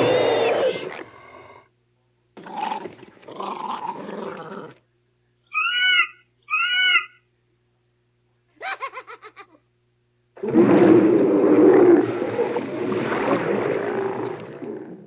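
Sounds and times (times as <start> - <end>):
creature growling snarl: 0.0 - 1.6
short high yelps: 5.5 - 7.2.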